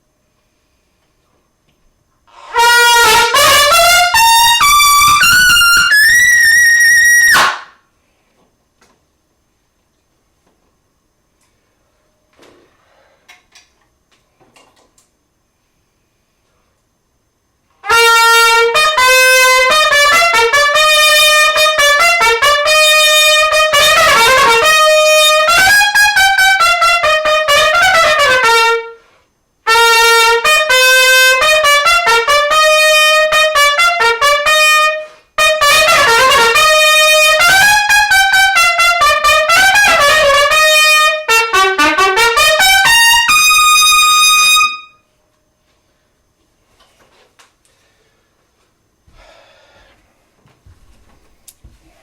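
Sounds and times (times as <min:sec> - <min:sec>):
solo trumpet: 0:02.3 - 0:07.8, 0:17.8 - 0:45.1.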